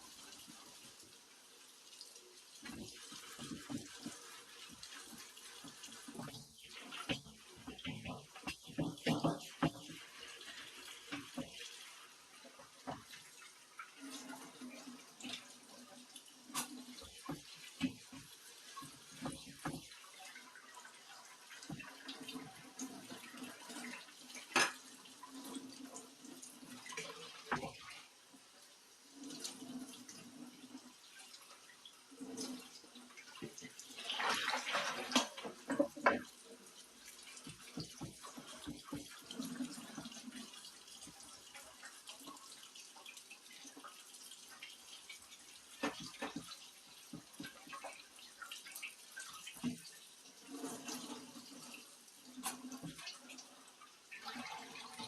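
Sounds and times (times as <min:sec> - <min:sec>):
tap water running: 0:00.0 - 0:55.0
dishes clinking: 0:24.5 - 0:24.8.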